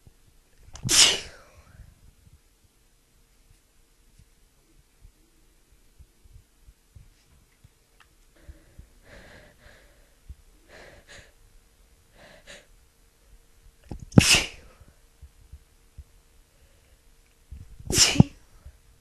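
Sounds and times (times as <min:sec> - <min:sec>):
woman sneezing: 0:00.9 - 0:01.4, 0:14.2 - 0:14.7, 0:17.9 - 0:18.3
faint catching breaths: 0:08.4 - 0:11.4.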